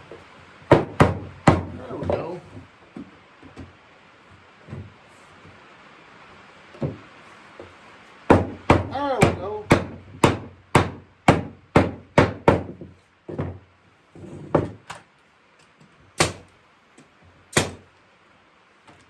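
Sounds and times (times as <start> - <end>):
handling knocks: 0.7 - 3.7.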